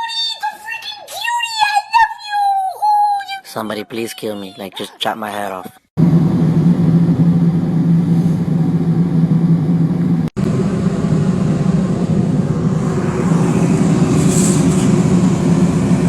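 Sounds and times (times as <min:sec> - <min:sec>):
motor drone: 0:06.0 - 0:16.0.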